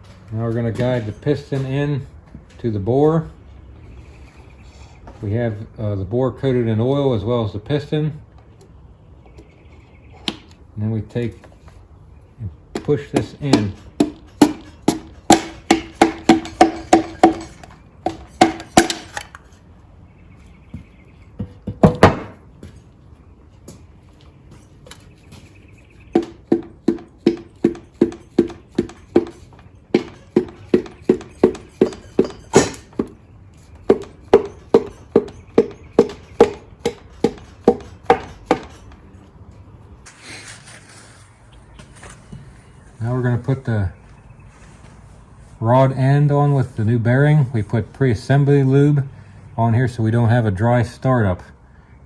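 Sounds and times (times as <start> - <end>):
heavier knock: 33.9 - 38.7.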